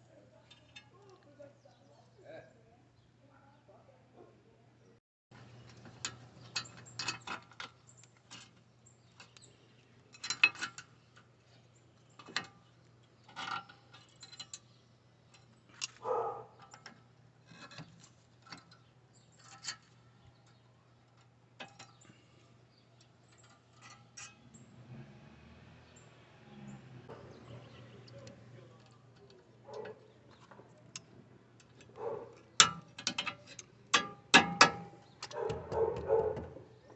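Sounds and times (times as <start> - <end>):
metallic clicks and knocks: 28.1 - 36.6.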